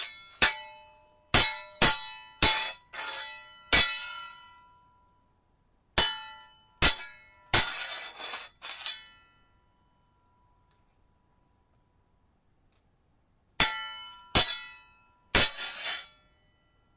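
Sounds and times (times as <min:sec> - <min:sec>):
sword blades clashing: 0:00.0 - 0:04.6, 0:06.0 - 0:09.3, 0:13.6 - 0:16.2.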